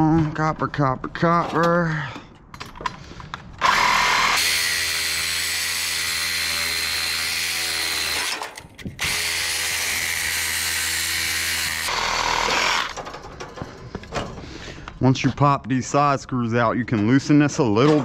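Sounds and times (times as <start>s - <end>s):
reciprocating saw cutting metal: 3.6s - 13.1s.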